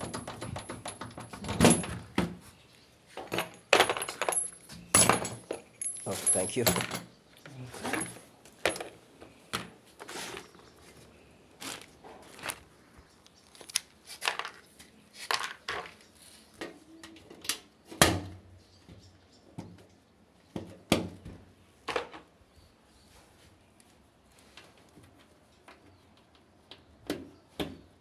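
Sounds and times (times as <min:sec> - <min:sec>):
hard objects clinking and knocking: 0:03.2 - 0:07.2.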